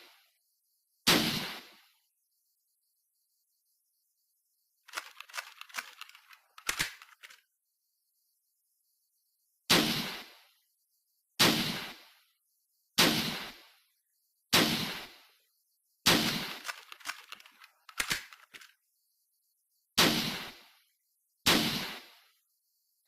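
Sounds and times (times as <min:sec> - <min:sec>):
rifle bolt clicks and clacks: 0:04.9 - 0:07.4, 0:16.3 - 0:18.7
rifle shots ringing out: 0:16.1 - 0:16.8.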